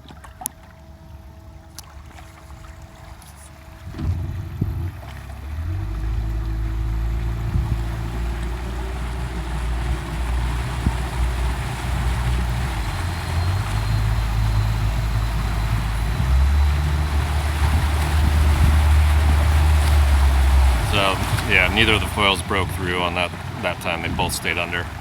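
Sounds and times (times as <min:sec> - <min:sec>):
motorboat engine hum: 0:00.0 - 0:25.0
water noise: 0:00.0 - 0:25.0
wind noise: 0:03.8 - 0:25.0.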